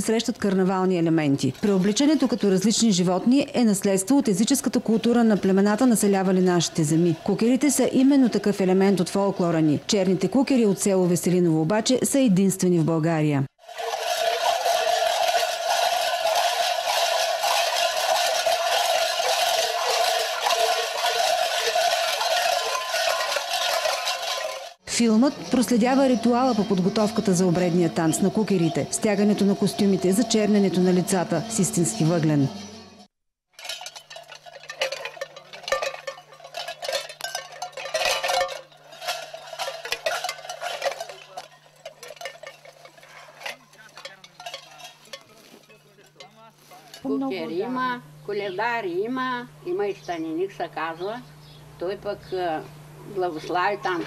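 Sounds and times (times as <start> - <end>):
costume bells clanging: 13.7 - 24.8, 33.6 - 47.1
steady low hum: 33.6 - 54.0.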